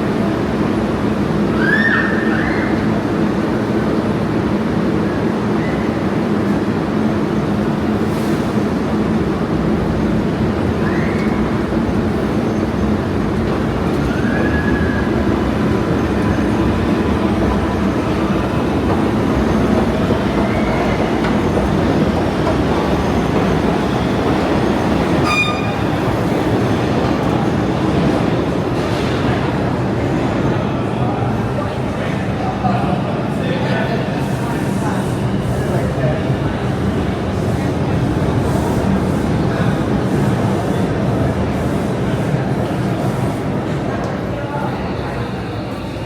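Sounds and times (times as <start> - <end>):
subway train rumbling: 0.0 - 46.0
wheels squealing on rails: 1.4 - 3.2, 10.6 - 28.2.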